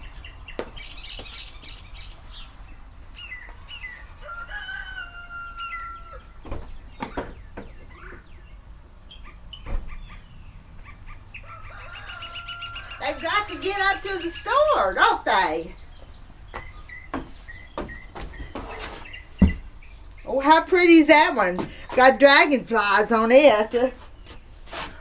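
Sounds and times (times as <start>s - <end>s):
small birds chirping: 0.0s - 25.0s
rooster crowing: 4.2s - 6.4s, 11.4s - 14.2s
sharp thumps: 16.5s - 19.8s.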